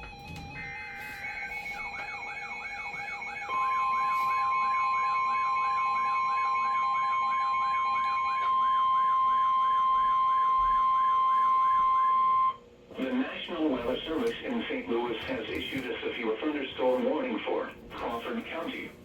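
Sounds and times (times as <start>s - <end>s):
steady single alarm tone: 0.0s - 12.6s.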